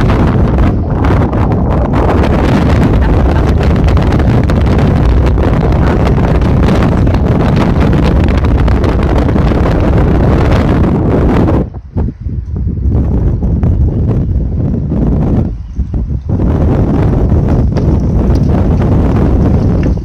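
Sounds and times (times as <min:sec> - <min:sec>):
storm wind buffeting microphone: 0:00.0 - 0:20.0.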